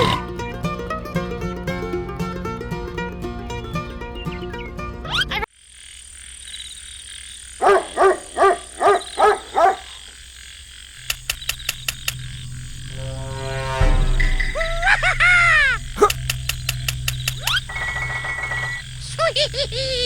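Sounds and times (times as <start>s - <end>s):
animal croaking: 5.1s - 20.0s.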